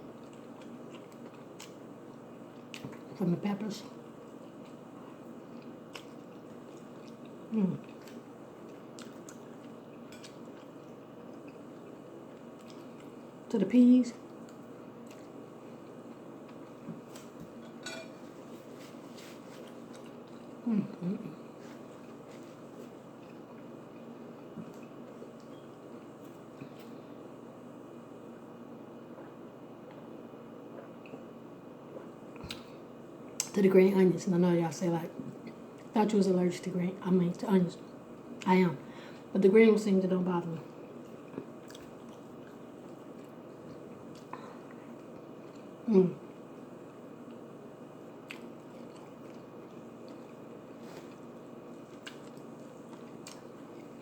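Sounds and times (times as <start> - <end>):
chewing food: 0.1 - 3.2, 3.9 - 13.5, 14.2 - 26.9, 40.6 - 54.0.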